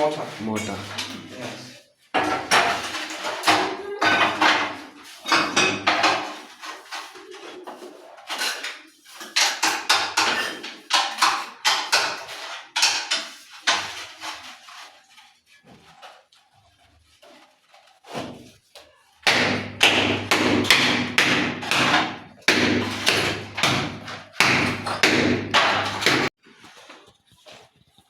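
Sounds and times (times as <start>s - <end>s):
metal trowel scraping mortar: 0.1s - 15.7s.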